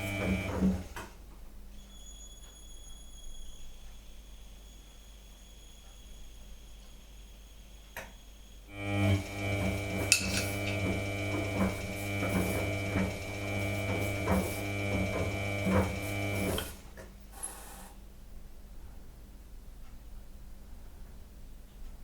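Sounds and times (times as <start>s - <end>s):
washing machine spinning: 0.0s - 1.1s, 8.7s - 17.0s.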